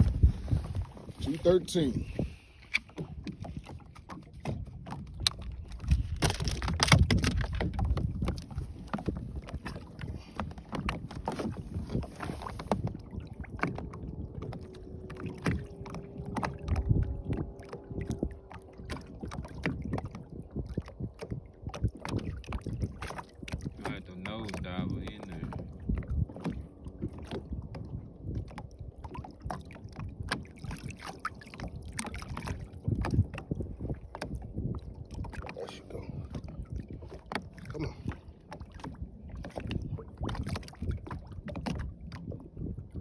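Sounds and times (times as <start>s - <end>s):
rumble of water: 0.0s - 43.0s
wind on the microphone: 0.0s - 43.0s
handling knocks and rattles: 5.3s - 12.2s.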